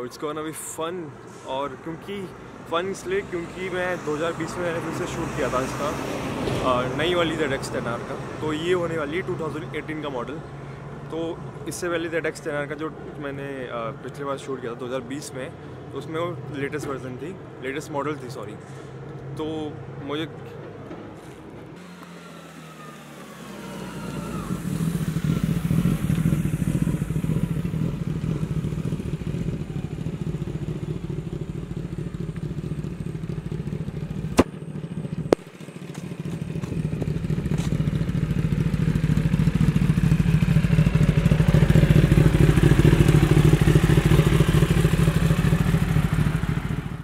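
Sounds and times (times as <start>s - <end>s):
motorcycle engine droning: 18.8s - 47.0s.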